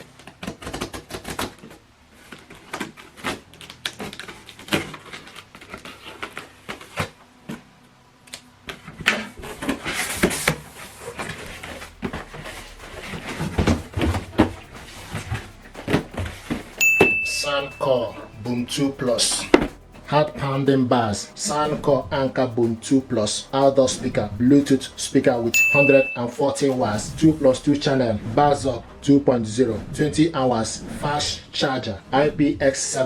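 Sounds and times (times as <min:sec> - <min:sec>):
packaging rustling and tearing: 0:00.0 - 0:07.2.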